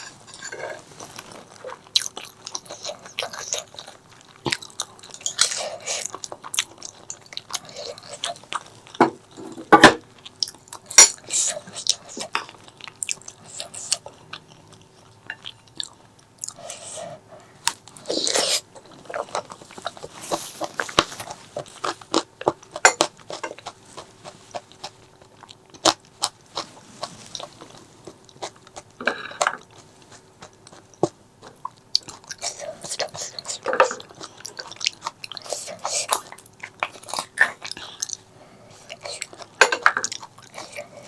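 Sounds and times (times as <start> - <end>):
chewing and biting: 17.7 - 41.0.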